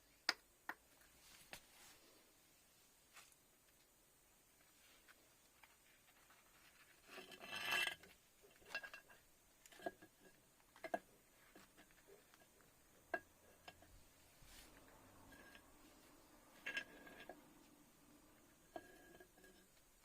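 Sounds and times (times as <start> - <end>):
metal rubbing scrape: 6.4 - 9.1, 13.4 - 20.0.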